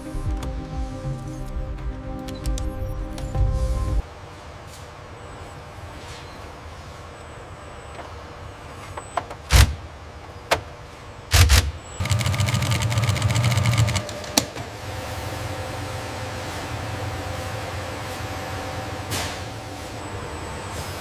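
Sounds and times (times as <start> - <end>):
power tool buzzing rattle: 11.3 - 14.1
steady machine hum: 11.4 - 21.0.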